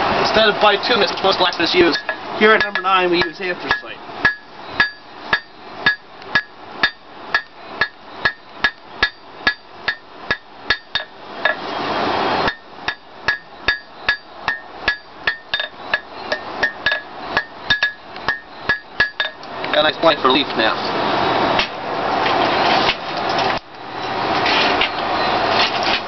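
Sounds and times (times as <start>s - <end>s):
hammer striking steel on anvil: 1.9s - 11.6s, 12.5s - 19.4s.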